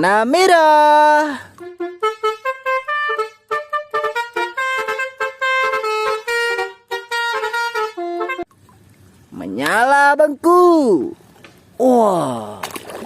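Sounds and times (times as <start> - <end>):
multi-tone bus horn tune: 1.6 - 8.5.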